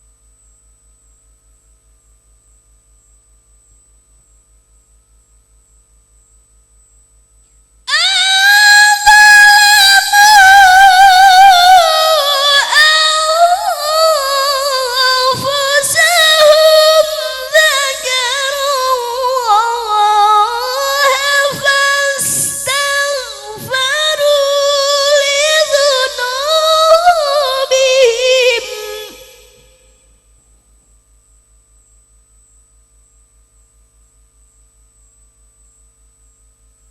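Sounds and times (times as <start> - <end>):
person reciting melodically: 7.9 - 29.9.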